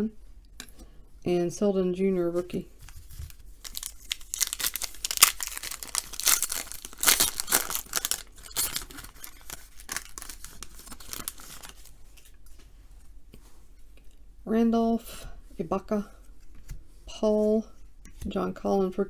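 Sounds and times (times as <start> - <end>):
wrapper tearing and crinkling: 2.8 - 12.4.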